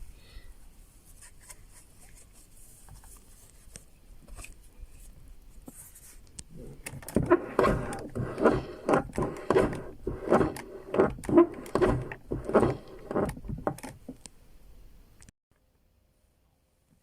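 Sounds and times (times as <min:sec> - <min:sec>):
car door hinge creaking and clunking: 0:06.9 - 0:14.2.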